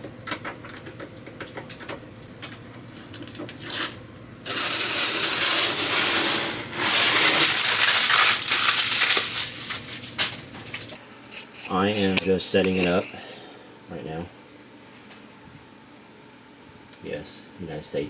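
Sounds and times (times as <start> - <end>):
plastic film peeling: 3.5 - 11.0.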